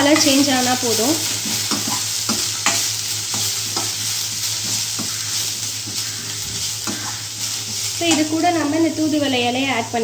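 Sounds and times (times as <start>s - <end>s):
vegetables sizzling in oil: 0.0s - 10.0s
spoon scraping and tapping pan: 1.4s - 4.0s, 5.8s - 8.4s.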